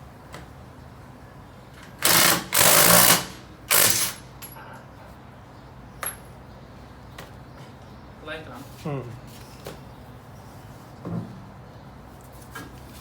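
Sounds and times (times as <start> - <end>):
impact wrench hammering: 2.0 - 4.3.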